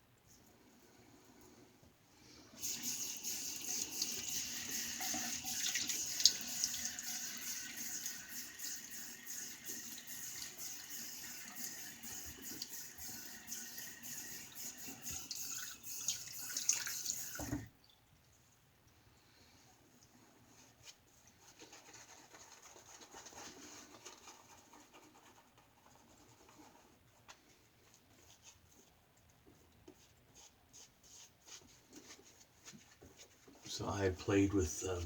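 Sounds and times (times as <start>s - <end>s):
water running from tap: 2.6s - 17.7s.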